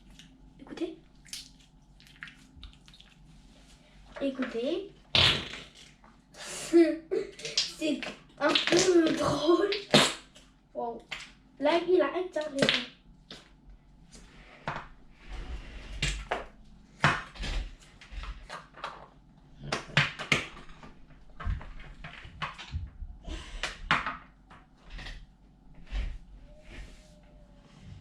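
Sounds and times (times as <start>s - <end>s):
slime squelching: 1.1s - 6.0s.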